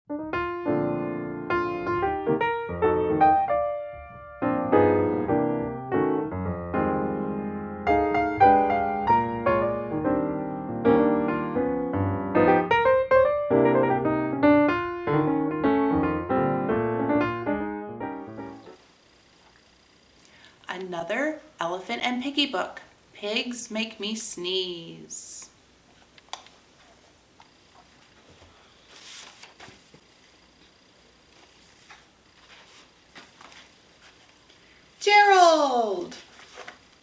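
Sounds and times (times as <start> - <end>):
solo piano tune: 0.1 - 18.8.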